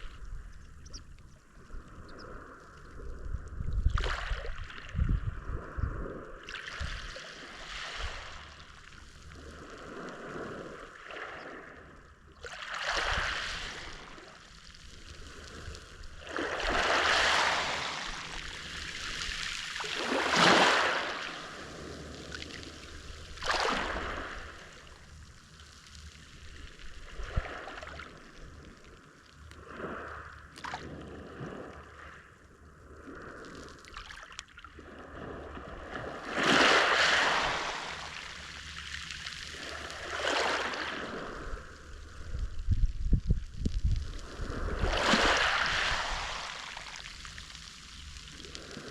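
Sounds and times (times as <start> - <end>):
waves washing onto shore: 3.9 - 32.3, 32.9 - 48.9
water lapping: 12.4 - 25.6, 33.0 - 41.9.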